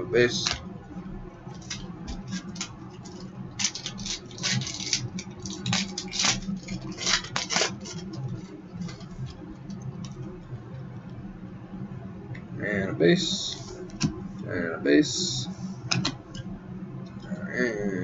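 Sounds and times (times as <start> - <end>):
low hum: 0.0 - 18.0
cards flicking and scraping: 1.6 - 9.4.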